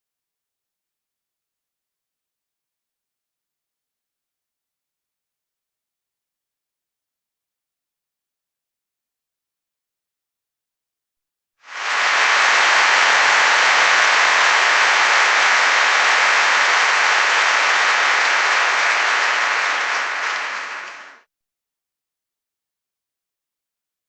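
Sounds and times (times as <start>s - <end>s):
crowd applauding and cheering: 11.7s - 21.3s.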